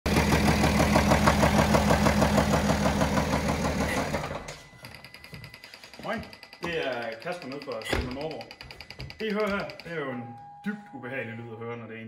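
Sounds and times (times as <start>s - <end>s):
diesel engine knocking: 0.1s - 4.4s.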